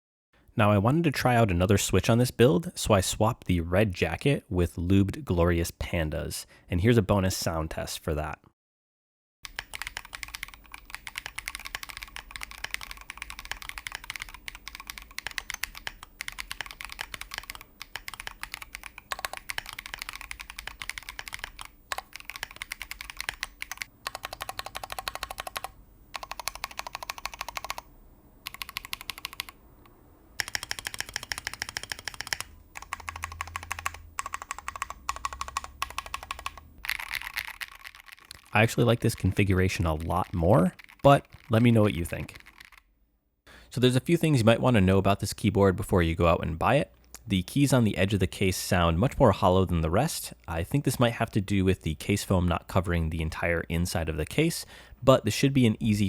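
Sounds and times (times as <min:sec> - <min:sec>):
typing on mechanical keyboard: 0:09.5 - 0:42.8.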